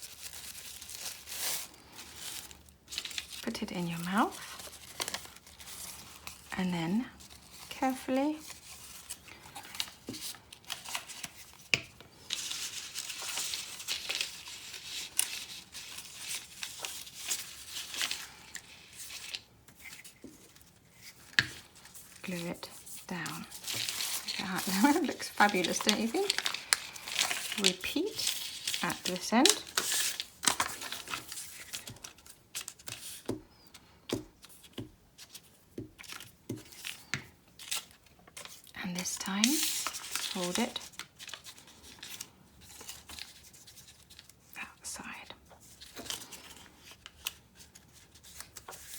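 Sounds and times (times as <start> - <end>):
paper rustling and crinkling: 0.0 - 44.5, 45.1 - 48.9
soft taps on paper: 35.8 - 37.3.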